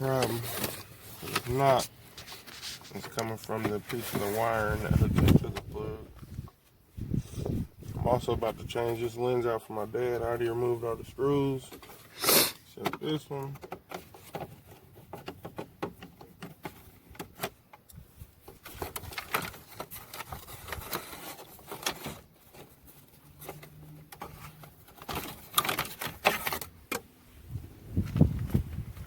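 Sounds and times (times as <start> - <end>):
plastic clicks and scraping: 11.6 - 27.1.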